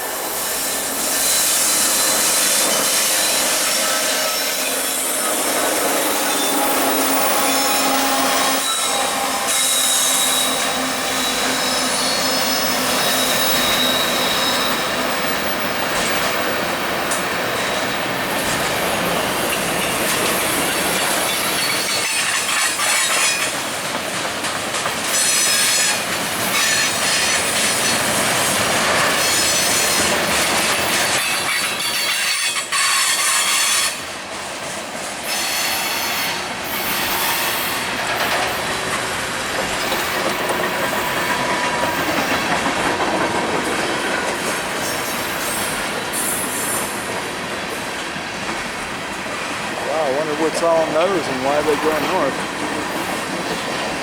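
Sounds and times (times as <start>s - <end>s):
train wheels clattering on rails: 0.0s - 54.0s
high-pitched wheel squeal: 1.1s - 15.5s.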